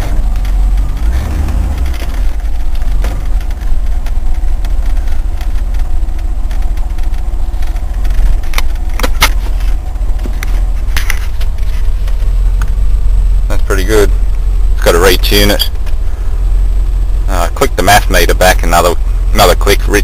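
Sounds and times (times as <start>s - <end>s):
sharp clicks or rattles: 0.0s - 12.7s
car engine rumbling in cabin: 0.0s - 20.0s.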